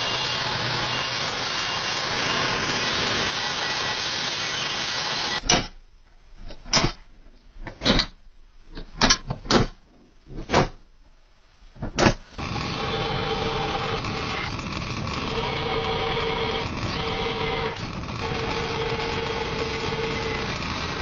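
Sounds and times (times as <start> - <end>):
power tool cutting metal: 0.0 - 5.4, 12.4 - 21.0.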